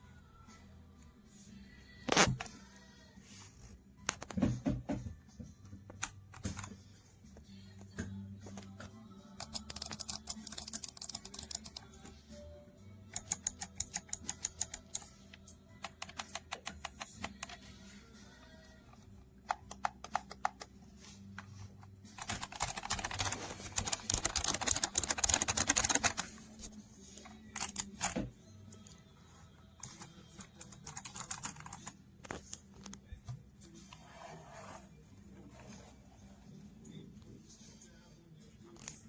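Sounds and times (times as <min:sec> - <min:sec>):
keypad keys clicking: 0:09.4 - 0:11.9, 0:13.1 - 0:15.2, 0:15.8 - 0:17.6, 0:19.5 - 0:20.7, 0:22.2 - 0:26.3, 0:27.6 - 0:28.2, 0:29.8 - 0:31.9.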